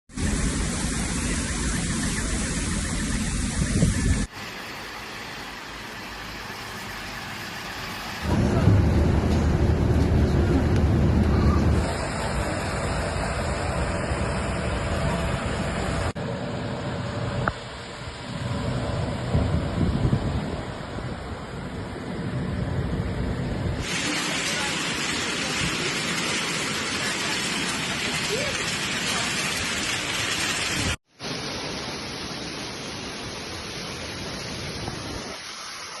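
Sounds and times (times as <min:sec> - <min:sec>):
heavy rain: 0:00.1 - 0:16.3, 0:23.7 - 0:36.0
wind on the microphone: 0:18.9 - 0:21.9.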